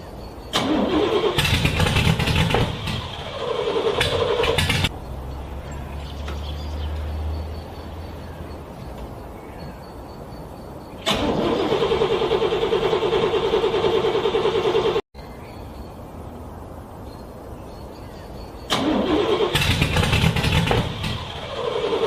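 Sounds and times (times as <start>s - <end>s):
car starter cranking engine: 0.5s - 4.9s, 11.0s - 15.0s, 18.7s - 22.0s.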